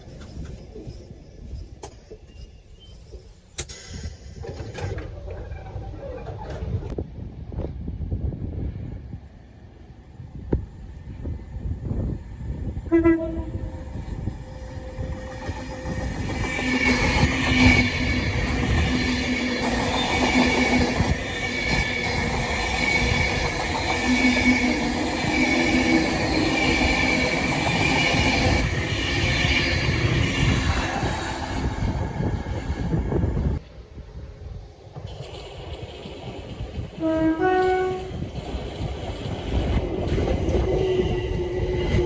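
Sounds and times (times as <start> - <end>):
train passing with rail rumble: 0.0 - 42.0
train horn toot: 12.8 - 15.2, 37.0 - 38.3.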